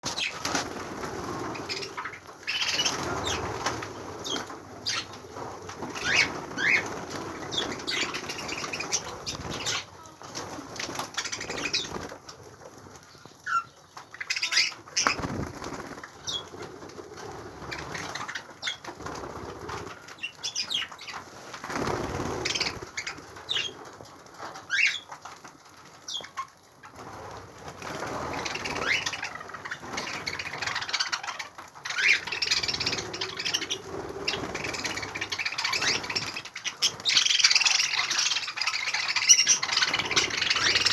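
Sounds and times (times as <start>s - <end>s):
wings flapping: 0.0s - 40.9s
budgerigars chirping: 1.6s - 3.5s, 6.0s - 9.9s, 13.5s - 15.4s, 28.4s - 40.9s.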